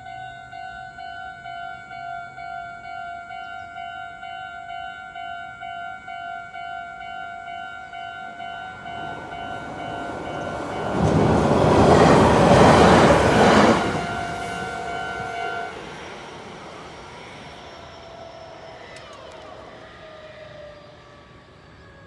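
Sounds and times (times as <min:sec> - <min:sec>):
level-crossing bell clanging: 0:00.0 - 0:19.5
train passing: 0:05.5 - 0:22.0.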